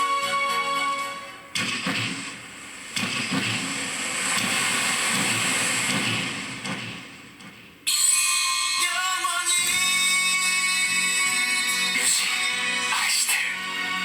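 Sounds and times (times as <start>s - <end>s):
pachinko rushing hissing effect: 1.7s - 7.3s
low rumble: 1.8s - 7.9s.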